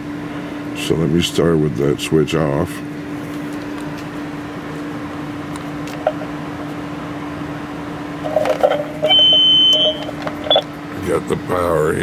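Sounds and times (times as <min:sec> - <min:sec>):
constant low hum: 0:00.0 - 0:12.0
high-pitched tone: 0:08.2 - 0:10.6
radio static hiss: 0:08.2 - 0:10.6.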